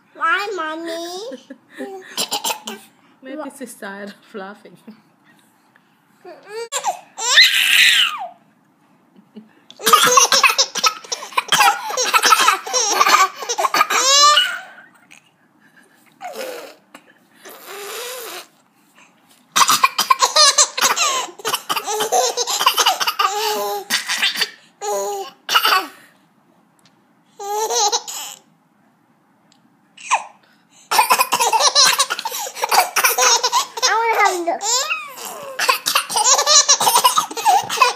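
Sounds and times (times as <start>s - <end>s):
baby coughing: 2.1s - 2.9s, 9.8s - 14.7s, 19.5s - 26.0s, 30.0s - 37.9s
baby laughing: 6.3s - 8.3s, 9.8s - 15.3s, 19.6s - 25.9s, 27.4s - 28.4s, 30.0s - 37.9s.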